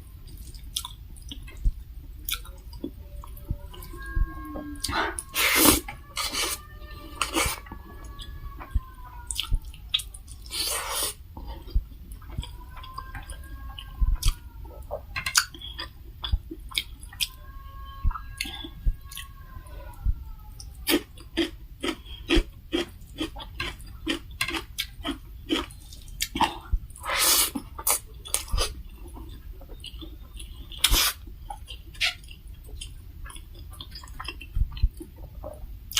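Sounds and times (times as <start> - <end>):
chewing and wet mouth smacks: 0.3 - 2.9, 20.9 - 35.3.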